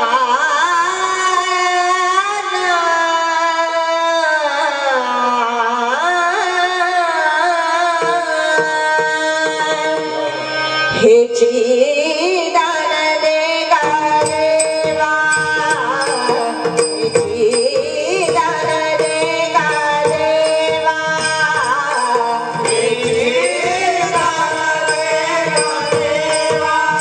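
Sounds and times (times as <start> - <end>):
tabla strokes: 5.9 - 27.0.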